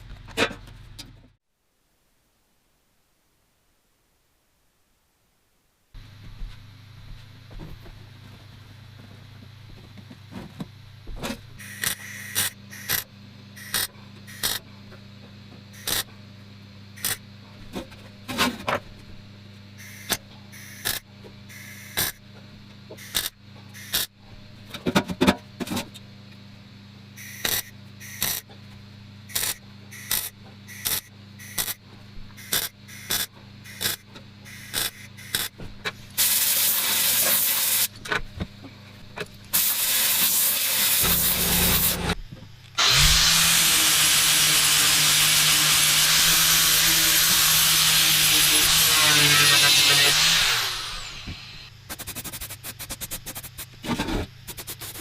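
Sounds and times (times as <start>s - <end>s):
steady low hum: 0.0s - 55.0s
spray hissing: 39.6s - 42.0s.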